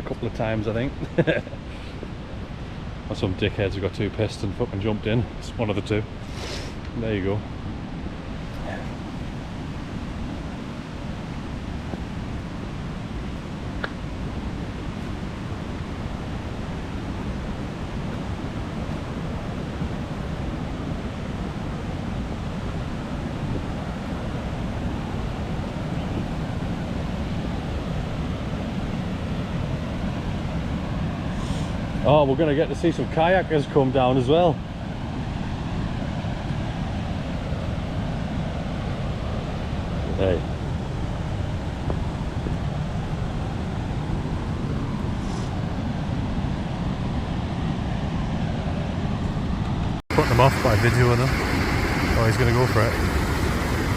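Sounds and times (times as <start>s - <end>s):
water rushing over waterfall: 50.1s - 53.9s.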